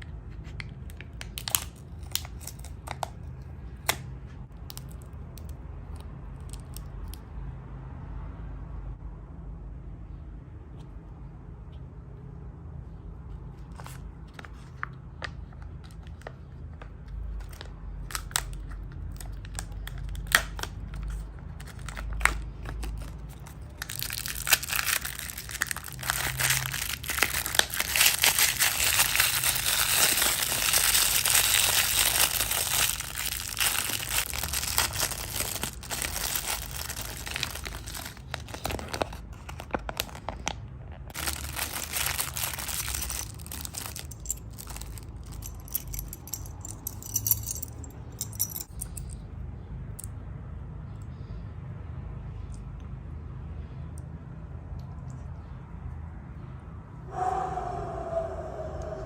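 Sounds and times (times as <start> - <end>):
wrapper crinkling: 0.8 - 3.2, 17.4 - 47.6.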